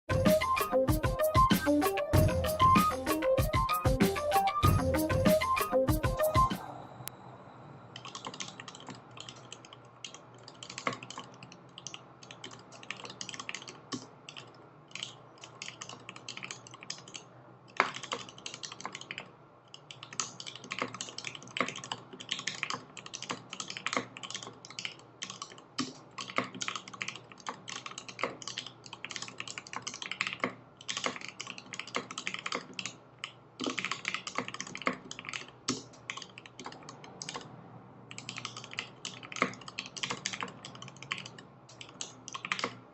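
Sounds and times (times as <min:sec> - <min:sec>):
typing on mechanical keyboard: 0:08.0 - 0:37.5, 0:38.1 - 0:42.8.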